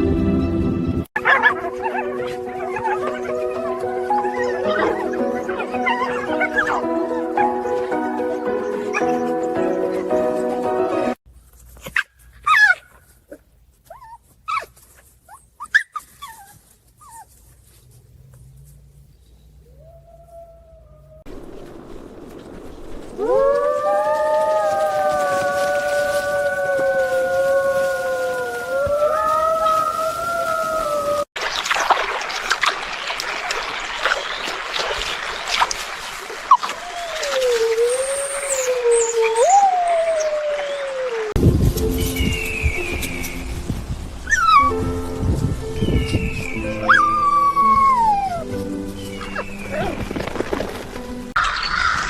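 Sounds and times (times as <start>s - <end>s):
music: 0.0s - 11.2s, 41.4s - 43.8s, 44.4s - 51.3s
wolf pup whimpering and yipping: 1.2s - 9.5s, 11.9s - 17.4s, 36.5s - 40.4s, 44.2s - 44.8s, 46.7s - 48.5s
wolf pup howling: 1.2s - 10.3s, 19.6s - 21.3s, 23.2s - 31.3s, 36.5s - 41.4s, 44.3s - 44.8s, 46.7s - 48.5s
small crackles and splats: 21.3s - 39.4s
water splashing and trickling: 29.8s - 44.1s.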